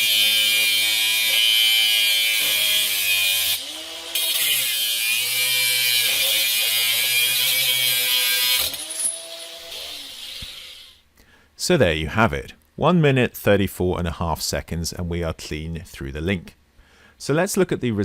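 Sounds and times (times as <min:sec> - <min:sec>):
angle grinder cutting steel: 0:00.0 - 0:11.0
grinder winding down: 0:00.0 - 0:11.0.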